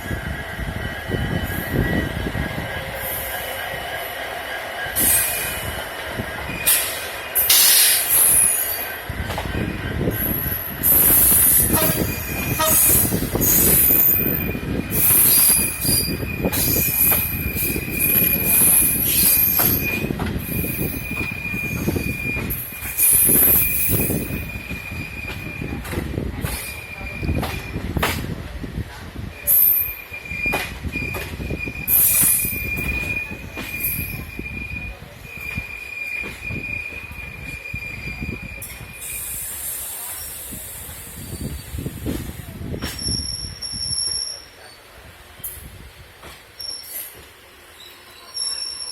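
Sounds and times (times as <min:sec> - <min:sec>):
train rumbling on rails: 0:00.0 - 0:48.9
shrill wheel screeches: 0:10.8 - 0:25.2.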